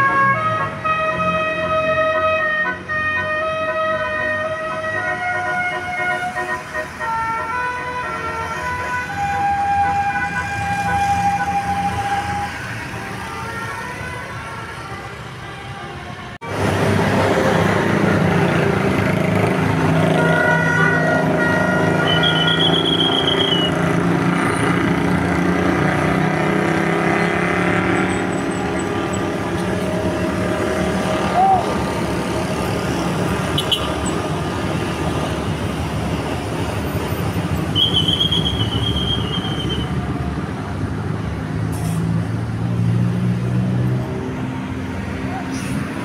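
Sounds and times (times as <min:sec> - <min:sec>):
bus engine running: 0:14.2 - 0:46.0.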